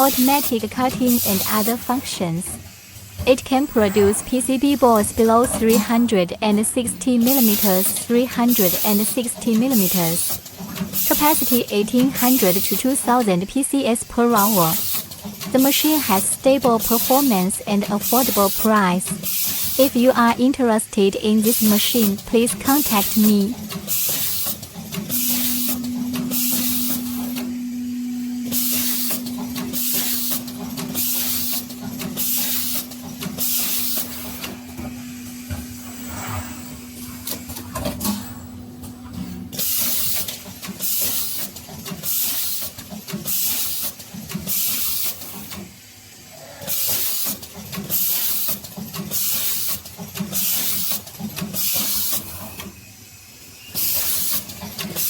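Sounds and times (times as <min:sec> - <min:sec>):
steady hum: 0:00.0 - 0:10.2, 0:24.6 - 0:40.5
machine running: 0:00.0 - 0:45.0.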